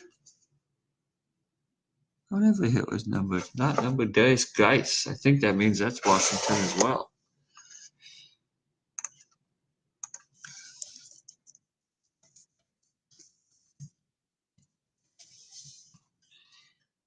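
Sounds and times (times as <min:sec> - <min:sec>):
cards sliding and rubbing: 0:06.0 - 0:07.0.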